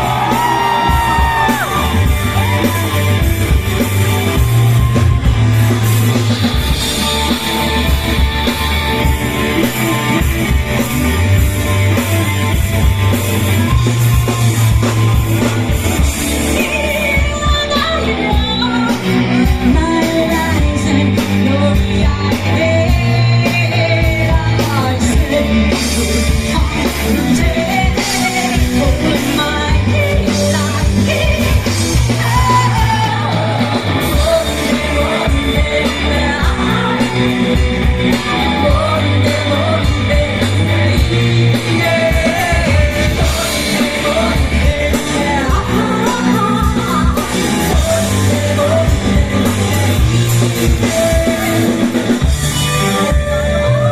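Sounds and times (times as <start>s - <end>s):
live band playing: 0.0s - 53.9s
person singing: 13.6s - 53.9s.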